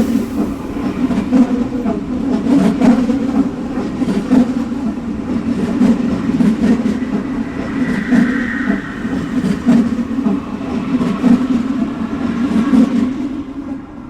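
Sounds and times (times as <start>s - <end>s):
subway train rumbling on tracks: 0.0s - 14.0s
faint high whine: 5.9s - 11.3s.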